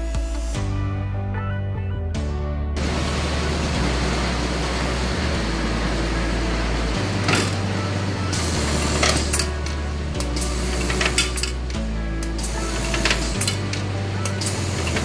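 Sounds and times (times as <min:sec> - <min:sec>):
air blower rushing: 0:02.8 - 0:15.0.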